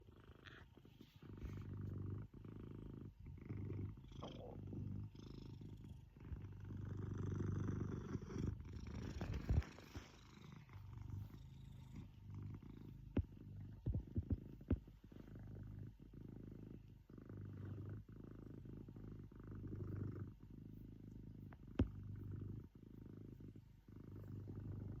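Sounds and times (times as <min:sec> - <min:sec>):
cat purring: 0:00.0 - 0:25.0.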